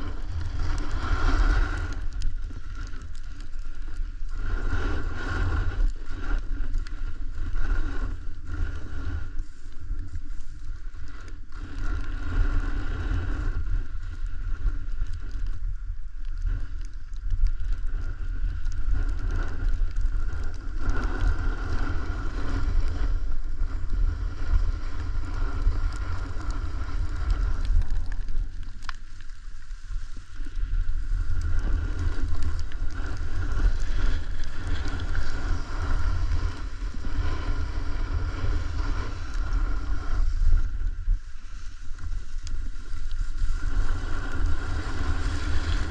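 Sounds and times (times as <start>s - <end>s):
snowboard hissing on snow: 0.0s - 2.9s, 4.3s - 14.8s, 18.9s - 45.9s
wind buffeting microphone: 0.0s - 45.9s.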